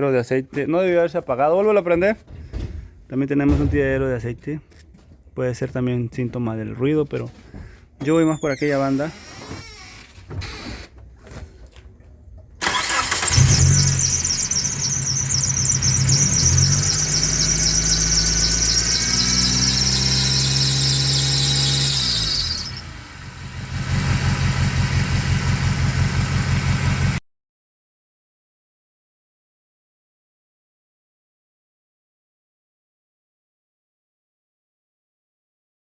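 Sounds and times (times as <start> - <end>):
high-pitched belt squeal: 8.1 - 10.7, 12.6 - 23.0
car engine starting and running: 12.6 - 27.2.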